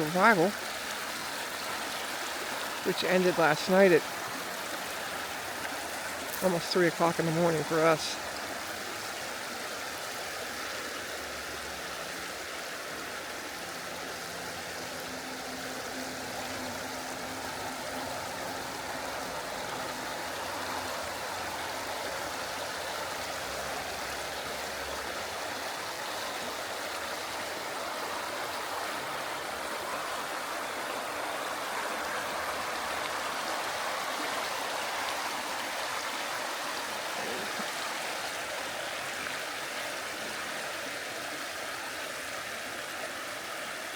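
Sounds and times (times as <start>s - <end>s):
stream flowing over rocks: 0.0s - 43.9s.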